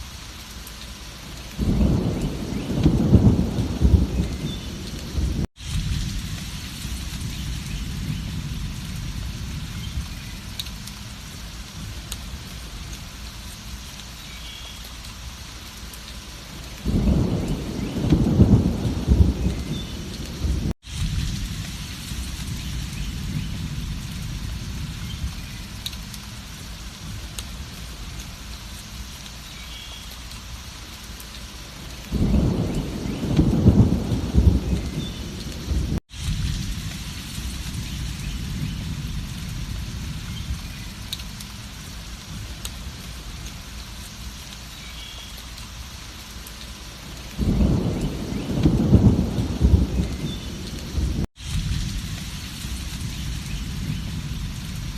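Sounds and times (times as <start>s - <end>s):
steady rain falling: 0.0s - 54.9s
low thunder rumbles: 1.6s - 13.2s, 16.6s - 28.4s, 31.9s - 43.5s, 47.0s - 54.9s.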